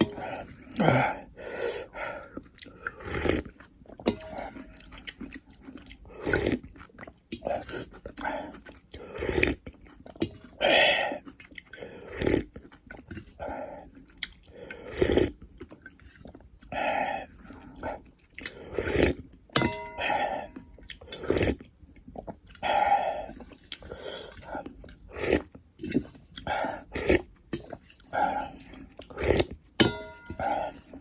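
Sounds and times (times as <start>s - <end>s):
chewing and biting food: 2.2s - 10.2s, 11.1s - 16.8s.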